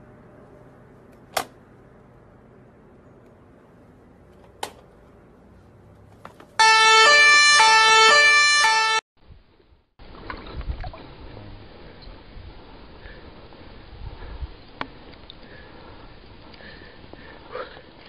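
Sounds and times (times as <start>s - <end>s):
two-tone siren: 6.6s - 9.0s.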